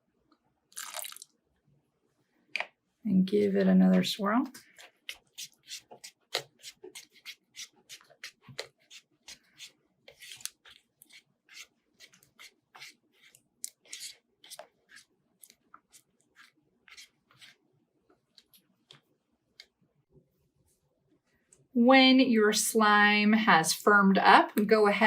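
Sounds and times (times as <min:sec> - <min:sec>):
plastic spoon scraping slime in cup: 0:04.7 - 0:17.6.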